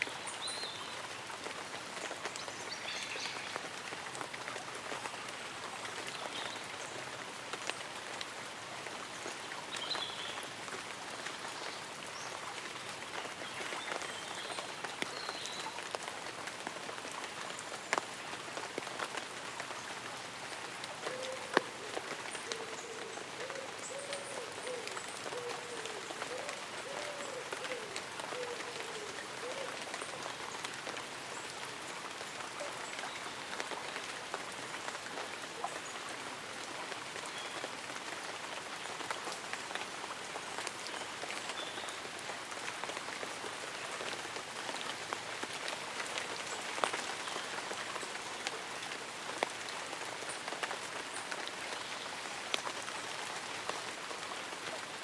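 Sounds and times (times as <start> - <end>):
light rain hissing: 0.0 - 55.0.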